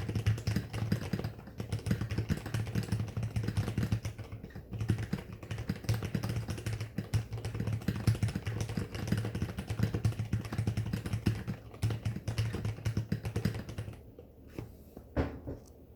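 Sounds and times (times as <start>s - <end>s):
fast keyboard typing: 0.0s - 14.2s.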